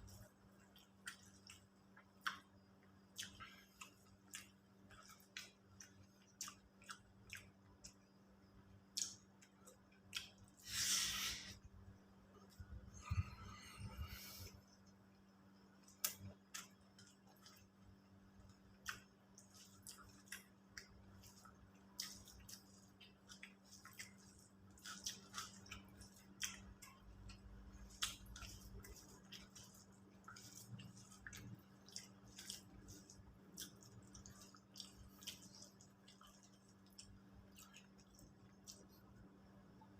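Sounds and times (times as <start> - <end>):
food being chewed: 0.0 - 11.6, 12.3 - 39.9
steady low hum: 0.0 - 39.9.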